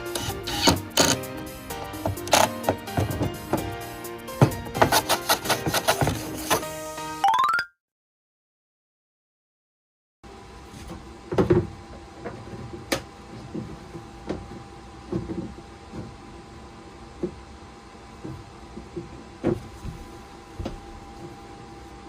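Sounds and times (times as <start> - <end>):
knocks and clunks of hand work: 2.0 - 3.7.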